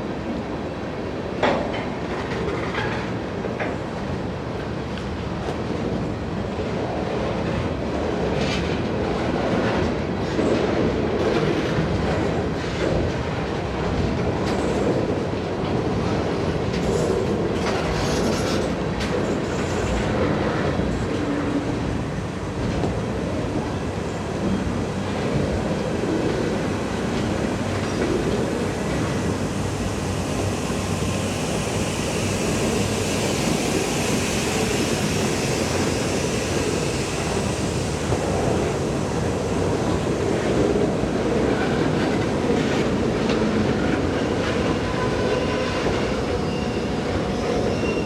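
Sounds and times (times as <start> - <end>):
train wheels clicking over rail joints: 16.6 - 21.9.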